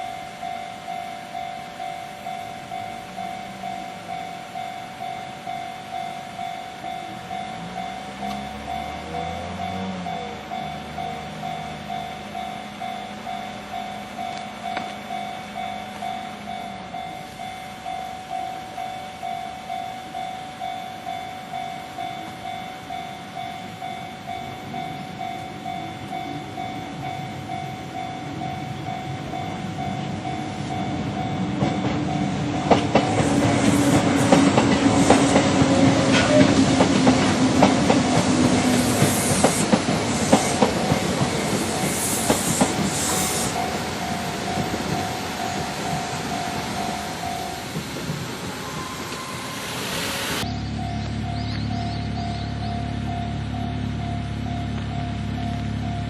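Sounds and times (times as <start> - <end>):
level-crossing bell ringing: 0.0 - 32.8, 43.2 - 56.0
electric train passing: 0.0 - 56.0
train wheels clicking over rail joints: 28.4 - 49.4.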